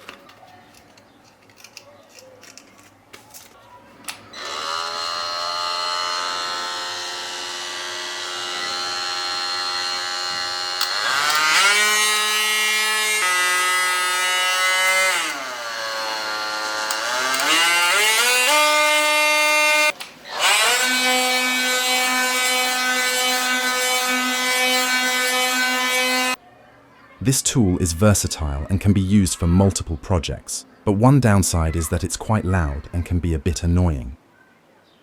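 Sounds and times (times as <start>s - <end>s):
oscillating multi-tool buzzing: 4.3s - 26.4s.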